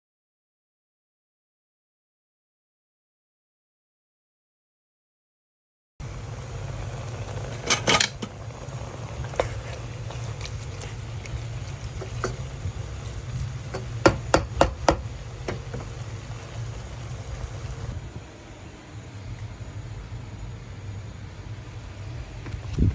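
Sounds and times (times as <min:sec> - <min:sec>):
steady low hum: 0:06.0 - 0:22.9
utensils clinking against dishes: 0:07.6 - 0:08.3.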